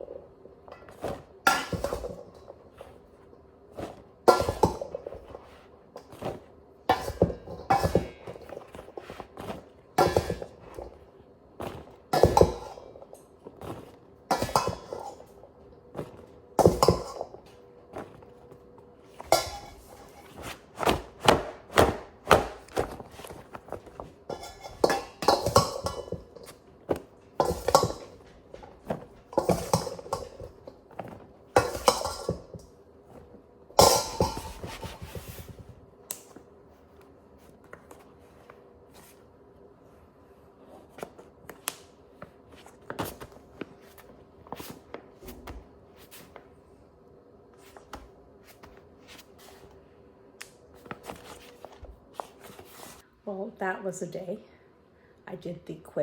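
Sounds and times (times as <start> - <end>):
faint steady hum: 0.0 - 56.0
dishes and utensils clinking: 0.7 - 3.0, 3.8 - 35.7.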